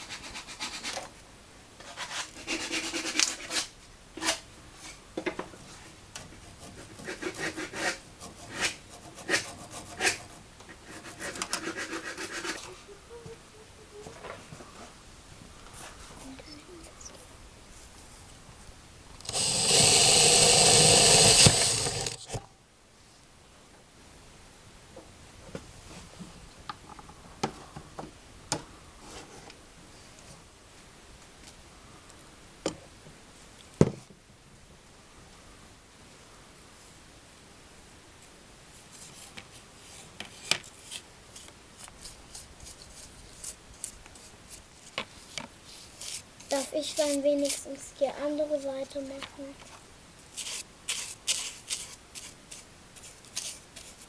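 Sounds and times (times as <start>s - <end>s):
electric drill motor whine: 19.2s - 22.2s.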